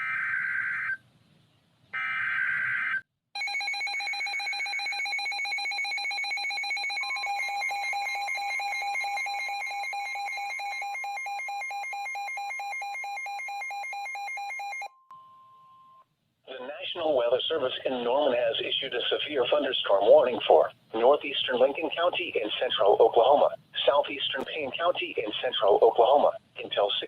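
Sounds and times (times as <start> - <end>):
rapid alarm beeps: 3.4 - 14.9.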